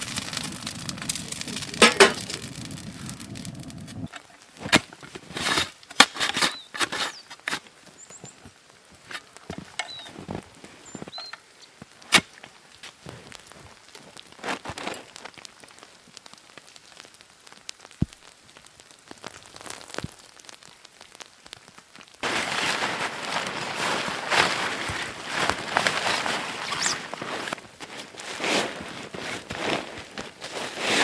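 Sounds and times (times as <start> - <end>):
steady rushing noise: 0.0 - 4.1
wood fire crackling: 0.0 - 6.3, 7.5 - 31.0.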